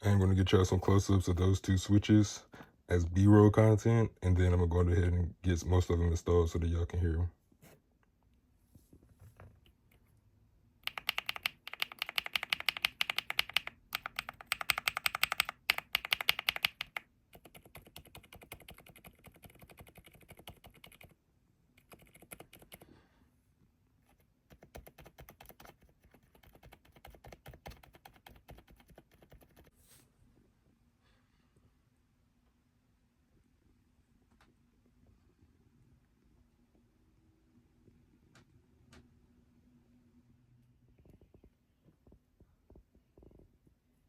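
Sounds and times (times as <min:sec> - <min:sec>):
mechanical keyboard typing: 0:10.8 - 0:21.2, 0:21.8 - 0:22.8, 0:24.1 - 0:29.7.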